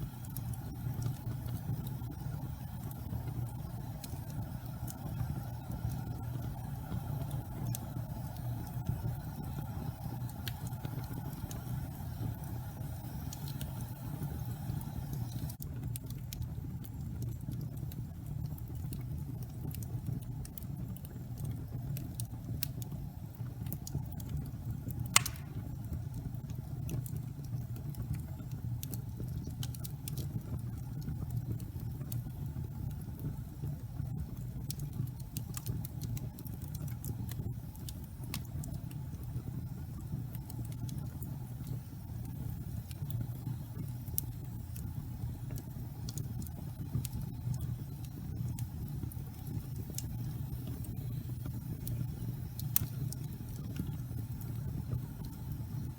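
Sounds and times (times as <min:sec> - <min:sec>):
fire crackling: 0:00.0 - 0:55.9
low rumble of flames: 0:00.0 - 0:55.9
loud fire pop: 0:25.2 - 0:25.8.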